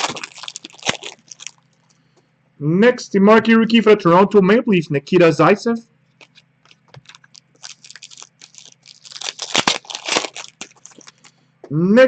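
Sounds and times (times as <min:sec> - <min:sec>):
foil wrapper tearing and crinkling: 0:00.0 - 0:01.6, 0:06.2 - 0:11.3
cards being handled: 0:06.2 - 0:11.3.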